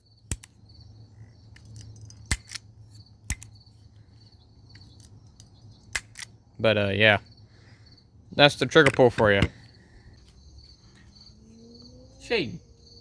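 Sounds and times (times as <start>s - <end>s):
crickets chirping: 0.0s - 13.0s
pistol action clicks: 0.3s - 0.6s, 1.6s - 2.7s, 3.3s - 3.5s, 4.8s - 6.4s.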